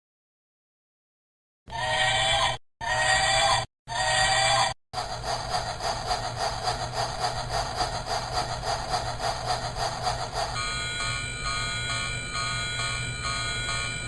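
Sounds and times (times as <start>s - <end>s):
toy steam engine chuffing: 1.7s - 14.0s
railway crossing bell ringing: 10.6s - 14.0s.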